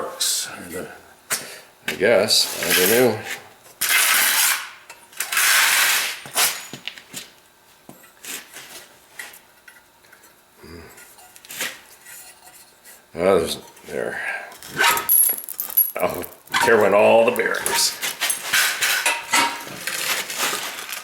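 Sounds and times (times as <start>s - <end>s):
metal parts clicking and knocking: 14.8s - 19.6s.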